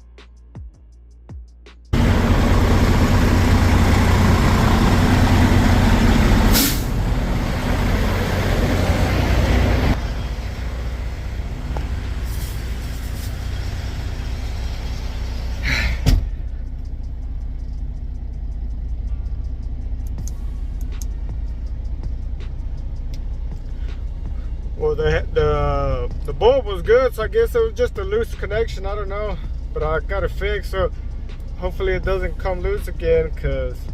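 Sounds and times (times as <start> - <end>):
diesel truck engine running: 1.9 - 33.9
hiss ending in sharp click: 6.5 - 6.9
air hisses: 6.5 - 7.0, 12.2 - 13.6.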